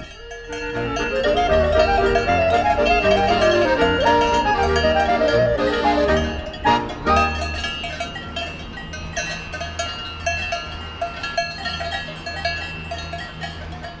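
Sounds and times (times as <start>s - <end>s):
cowbells clanking: 0.0s - 14.0s.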